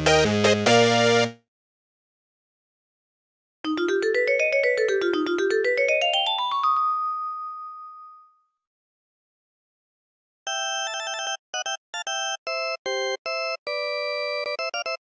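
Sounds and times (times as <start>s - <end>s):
mobile phone ringtone: 3.7s - 8.3s, 10.5s - 15.0s.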